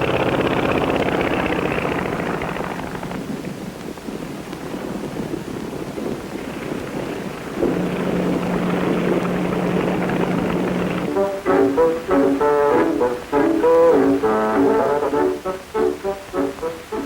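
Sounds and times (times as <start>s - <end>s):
propeller aeroplane engine droning: 0.0s - 17.0s
steady hum: 7.0s - 17.0s
brass band music: 7.7s - 17.0s.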